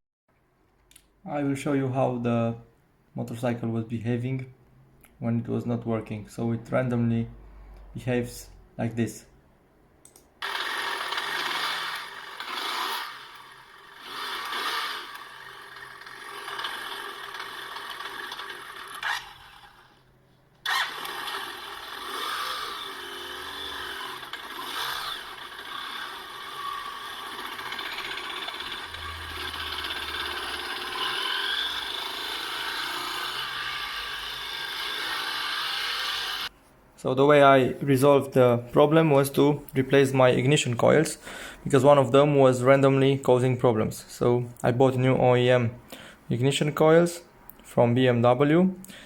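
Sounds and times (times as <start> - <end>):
motorcycle engine misfiring: 10.4 - 19.7, 20.6 - 35.6.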